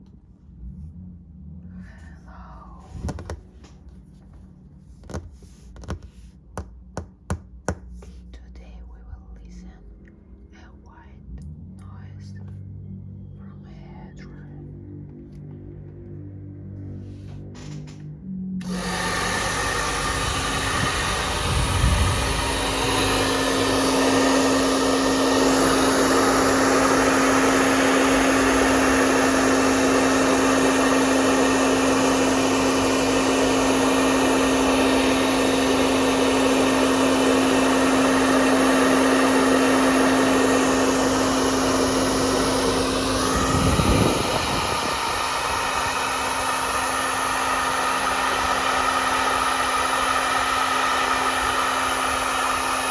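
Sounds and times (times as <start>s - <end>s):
hair dryer running: 2.9s - 3.7s, 5.1s - 8.2s, 18.6s - 52.9s.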